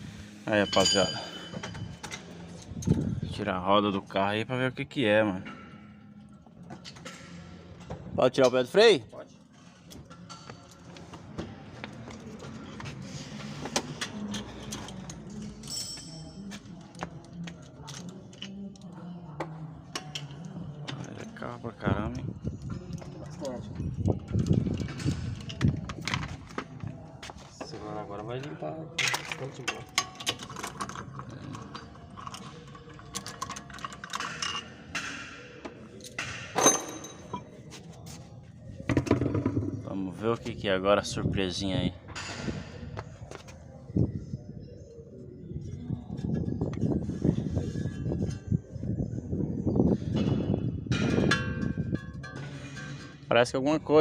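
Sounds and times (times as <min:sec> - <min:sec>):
metal tools clinking: 0:00.5 - 0:03.0, 0:14.0 - 0:16.6, 0:36.6 - 0:37.5
metal tools clicking and ratcheting: 0:29.0 - 0:35.1.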